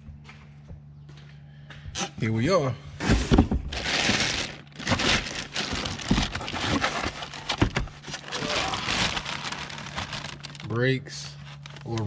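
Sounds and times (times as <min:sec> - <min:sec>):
packaging crinkling and rustling: 0:03.0 - 0:12.0.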